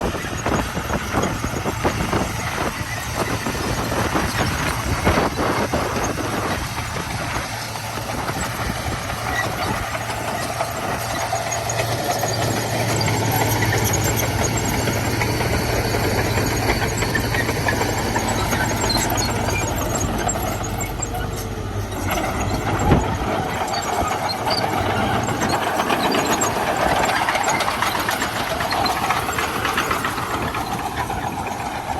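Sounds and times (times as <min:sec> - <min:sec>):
bulldozer diesel engine running: 0:00.0 - 0:31.9.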